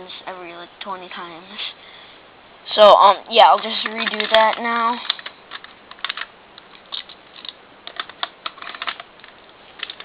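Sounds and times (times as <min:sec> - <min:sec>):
plastic parts clicking and rattling: 0:03.4 - 0:10.0.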